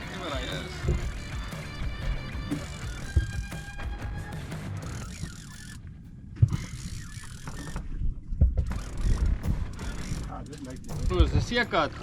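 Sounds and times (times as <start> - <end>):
sharp knocks: 1.9 - 4.2
fishing reel gears clicking: 8.7 - 12.0.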